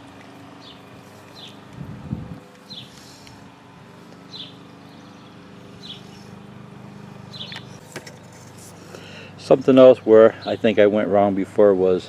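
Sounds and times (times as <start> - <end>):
steady low hum: 0.0 - 12.0
bird chirping: 0.6 - 1.6, 2.6 - 3.2, 4.2 - 6.4, 7.2 - 7.8.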